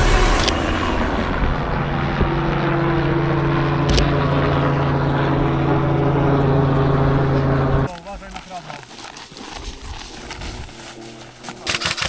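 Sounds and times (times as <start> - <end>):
motor running steadily: 0.0 - 7.9, 10.5 - 12.0.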